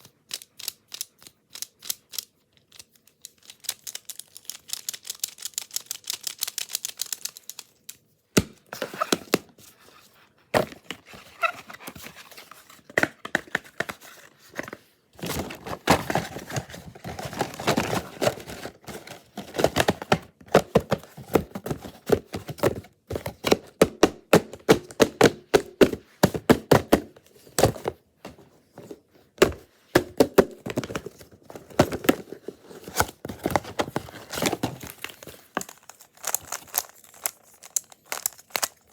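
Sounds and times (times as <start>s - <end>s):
puzzle cube clicking as twisted: 0.0s - 8.0s.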